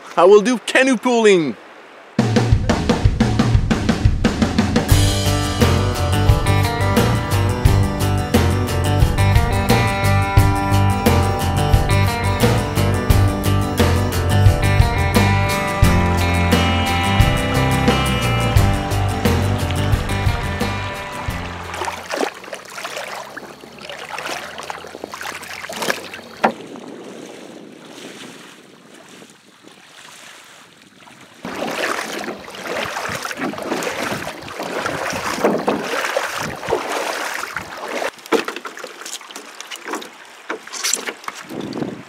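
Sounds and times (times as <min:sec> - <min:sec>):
water splashing around canoe: 0:00.0 - 0:05.2, 0:18.0 - 0:42.0
wind buffeting microphone: 0:24.8 - 0:37.9, 0:41.4 - 0:42.0
knocks on canoe: 0:25.9 - 0:26.7, 0:32.8 - 0:37.0, 0:38.0 - 0:38.7.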